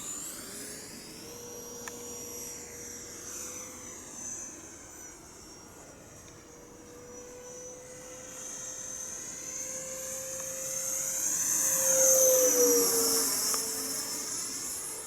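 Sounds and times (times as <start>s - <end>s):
model jet fan whine flying past: 0.0s - 15.0s.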